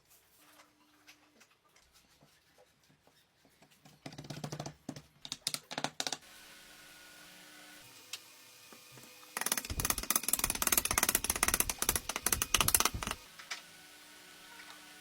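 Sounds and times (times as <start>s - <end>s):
rapid clatter of knocks: 9.4s - 13.2s.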